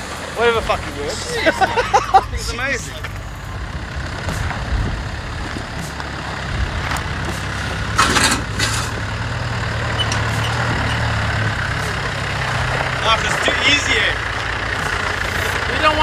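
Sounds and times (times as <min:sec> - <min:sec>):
off-road vehicle engine: 0:00.0 - 0:16.0
scraping and knocking: 0:04.1 - 0:09.2.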